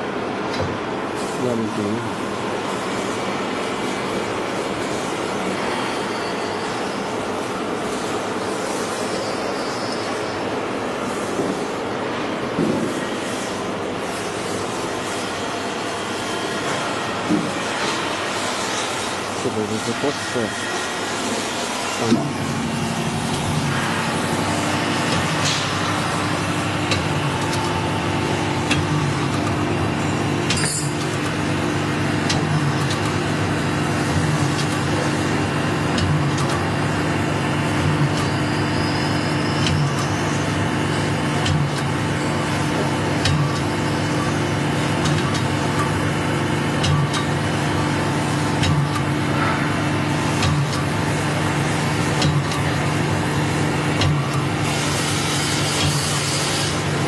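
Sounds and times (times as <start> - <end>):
grinding machine running: 15.3 - 57.0.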